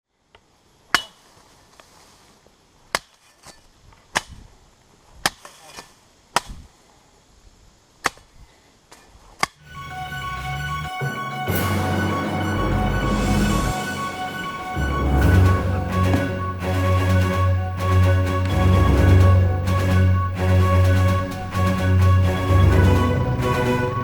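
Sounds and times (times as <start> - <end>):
music: 9.6 - 24.0.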